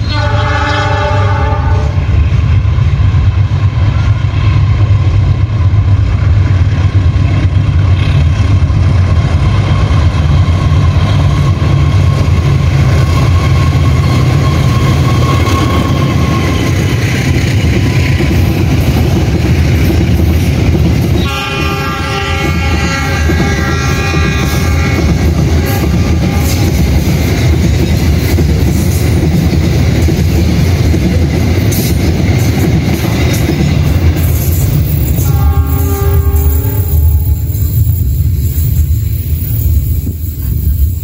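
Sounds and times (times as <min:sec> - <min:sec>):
multi-tone train horn: 0:00.0 - 0:02.4, 0:21.2 - 0:26.8, 0:35.1 - 0:37.8
train rumbling past: 0:00.0 - 0:41.0.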